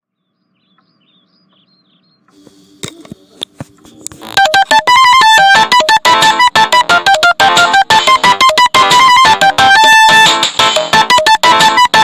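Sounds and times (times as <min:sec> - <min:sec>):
mobile phone ringtone melody: 0:04.2 - 0:10.2, 0:10.8 - 0:12.0.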